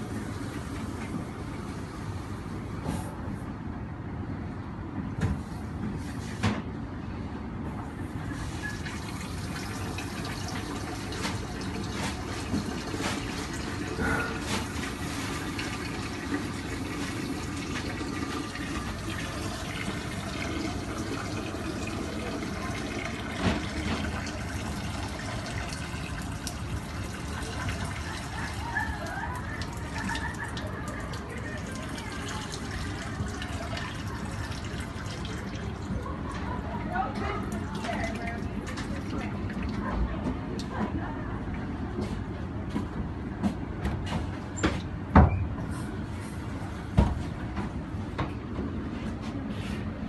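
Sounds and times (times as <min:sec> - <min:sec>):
water running and splashing: 0:08.3 - 0:36.4, 0:37.4 - 0:39.8.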